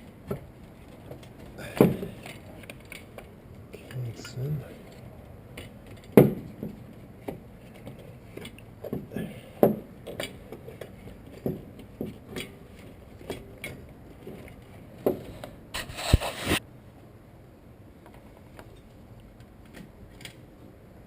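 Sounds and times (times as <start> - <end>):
metal scraping: 15.8 - 16.6.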